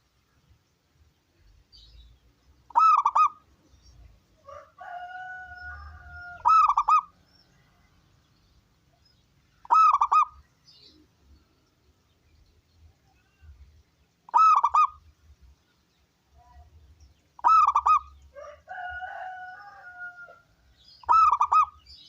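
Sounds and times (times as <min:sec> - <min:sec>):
dove cooing: 0:02.7 - 0:03.4, 0:04.6 - 0:07.2, 0:09.6 - 0:10.4, 0:14.3 - 0:15.0, 0:17.4 - 0:18.1, 0:21.0 - 0:21.8.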